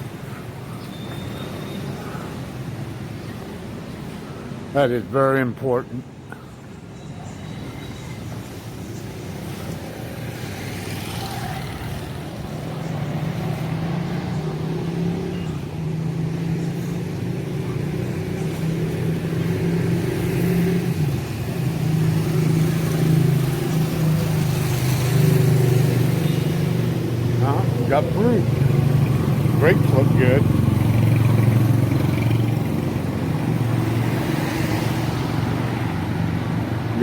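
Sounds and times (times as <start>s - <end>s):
vehicle engine humming: 9.5s - 37.0s.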